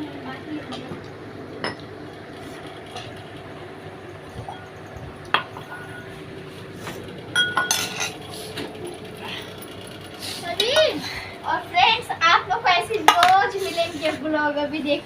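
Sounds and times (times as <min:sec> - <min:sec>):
dishes and cutlery clinking: 0:07.4 - 0:08.2.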